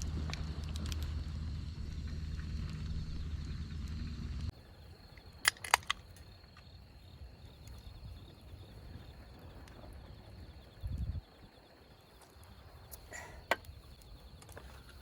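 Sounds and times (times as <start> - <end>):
steady low rumble: 0.0 - 4.9.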